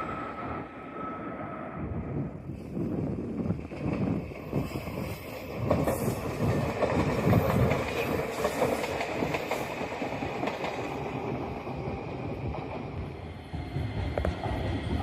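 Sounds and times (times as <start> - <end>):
diesel railcar running past: 0.0 - 15.0
wheels clacking over rail joints: 5.4 - 11.8.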